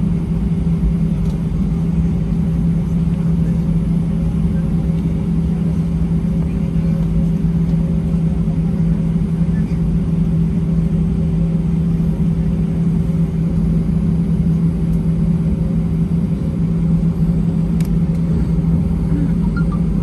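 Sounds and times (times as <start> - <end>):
airplane cabin hum: 0.0 - 20.0
faint higher tone: 19.1 - 20.0.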